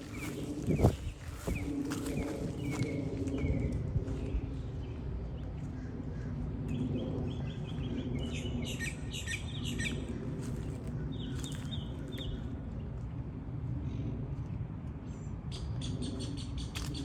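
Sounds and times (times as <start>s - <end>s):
songbirds chirping: 0.0s - 13.0s
low background rumble: 0.0s - 17.0s.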